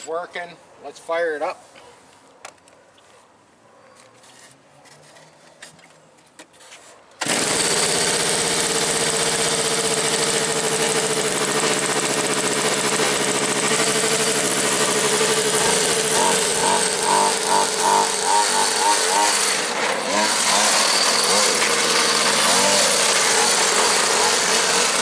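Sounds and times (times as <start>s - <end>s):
small engine running at high idle: 7.2s - 25.0s.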